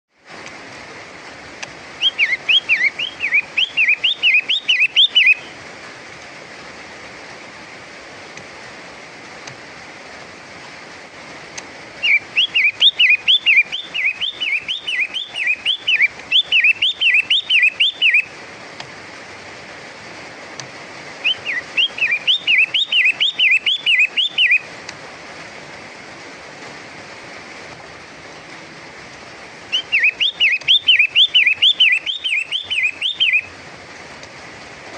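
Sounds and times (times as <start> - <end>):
steady hiss: 0.1 - 34.9
bird whistling calls: 2.0 - 5.6, 12.0 - 18.4, 21.2 - 24.7, 29.7 - 33.5.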